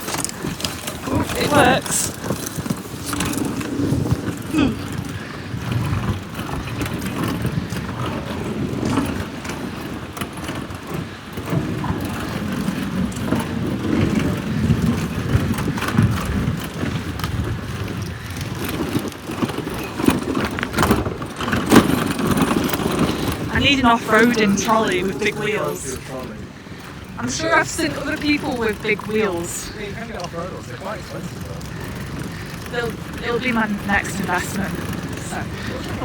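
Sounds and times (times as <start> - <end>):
small rattles and knocks: 0.0 - 25.0
trolley wheels rumbling on rough ground: 0.0 - 36.0.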